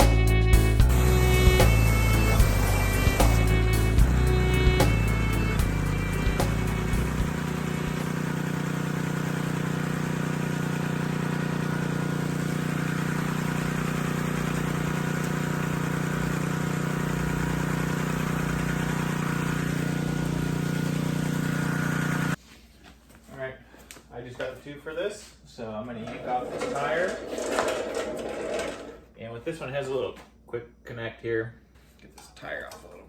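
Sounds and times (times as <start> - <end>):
long held music chord: 0.8 - 8.0.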